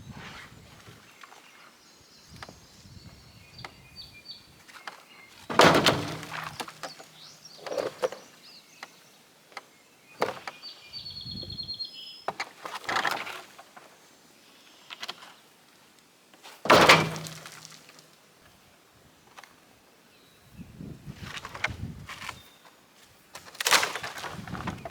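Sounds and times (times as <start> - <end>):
bird chirping: 0.0 - 5.5, 6.7 - 12.4
wood knocking and clattering: 4.9 - 8.3, 10.2 - 10.6, 16.7 - 17.8.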